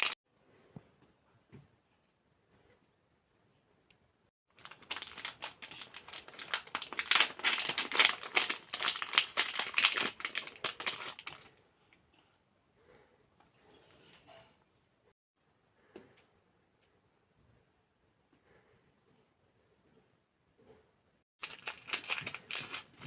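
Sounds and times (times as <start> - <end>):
plastic packaging crinkling: 4.5 - 11.5, 21.4 - 23.0.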